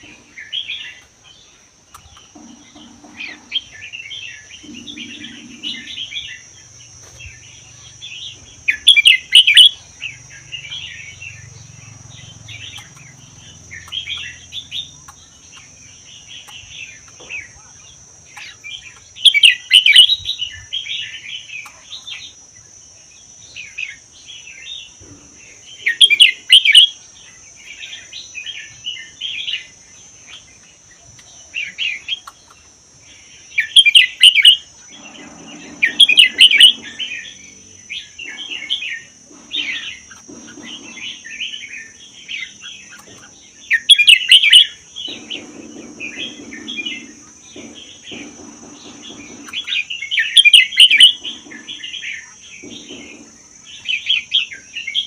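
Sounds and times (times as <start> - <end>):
soft bird chattering: 0.0 - 20.6, 33.6 - 37.4, 38.0 - 55.0
bulbul singing: 0.0 - 55.0.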